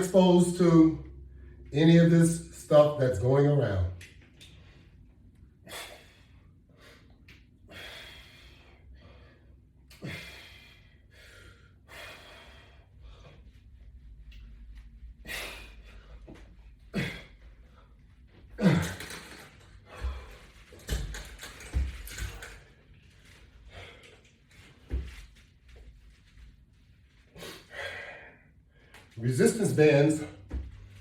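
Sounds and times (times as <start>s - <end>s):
man breathing hard: 4.5s - 14.1s, 15.0s - 20.8s, 23.4s - 24.4s, 27.3s - 29.2s
man grunting: 16.9s - 17.3s, 18.6s - 19.1s.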